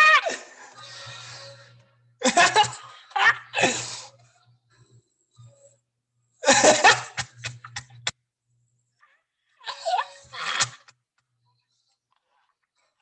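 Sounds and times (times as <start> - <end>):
man laughing: 2.2 - 3.6.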